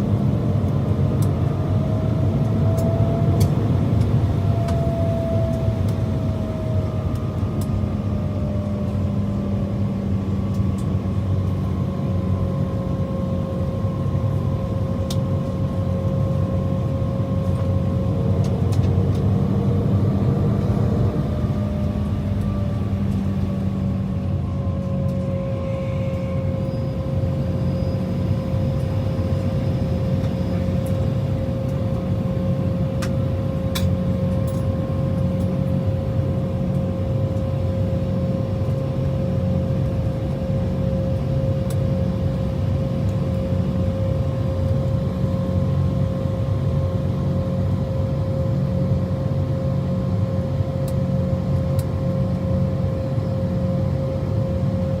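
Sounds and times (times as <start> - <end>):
aircraft cabin whine: 0.0 - 55.0
idling jet engines rumble: 0.0 - 55.0.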